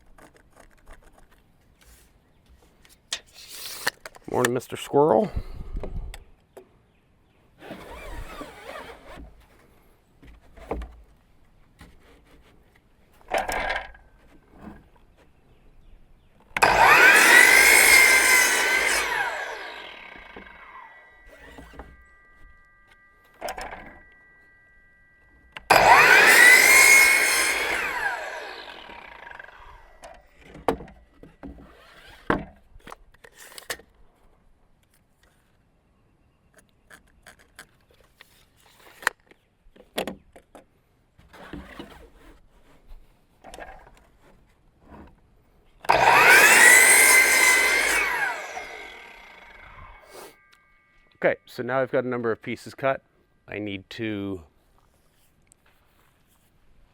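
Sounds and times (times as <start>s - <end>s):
power saw cutting wood: 7.6s - 9.3s, 16.6s - 24.1s, 25.6s - 30.2s, 45.9s - 50.4s.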